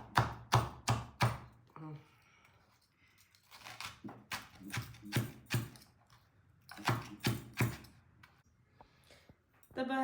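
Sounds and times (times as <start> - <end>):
knife chopping on board: 0.0 - 1.5.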